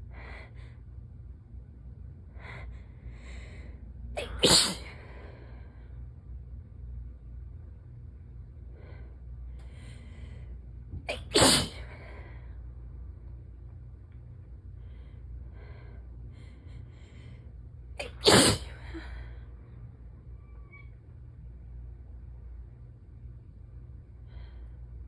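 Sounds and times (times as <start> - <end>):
person sneezing: 4.2 - 4.9, 11.1 - 11.9, 18.0 - 19.0
faint catching breaths: 8.7 - 10.8.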